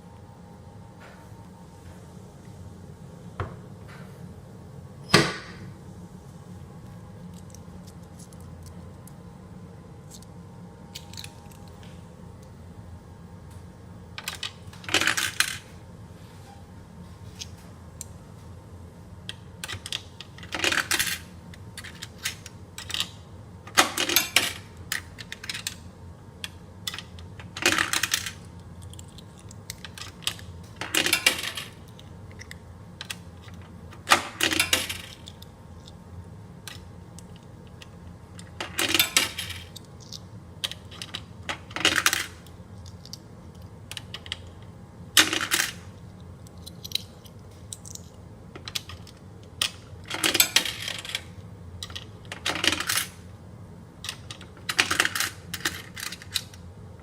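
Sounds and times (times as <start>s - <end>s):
low steady hum: 0.0s - 57.0s
coins rattling through coin slot: 14.2s - 15.7s, 19.6s - 25.8s, 26.4s - 35.4s, 36.6s - 43.1s, 43.9s - 44.6s, 45.2s - 45.9s, 46.6s - 53.2s, 54.0s - 56.6s.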